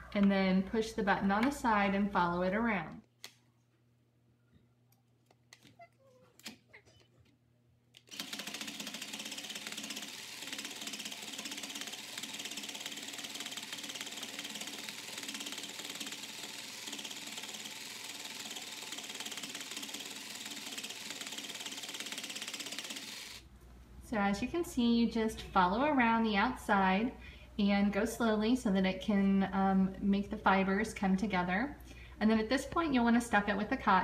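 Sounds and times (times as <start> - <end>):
felting machine clatter: 8.1 - 23.4.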